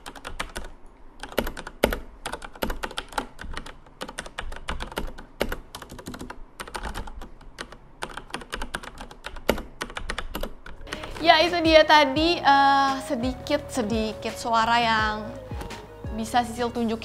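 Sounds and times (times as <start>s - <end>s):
mechanical keyboard typing: 0.0s - 11.5s
person speaking: 10.9s - 17.0s.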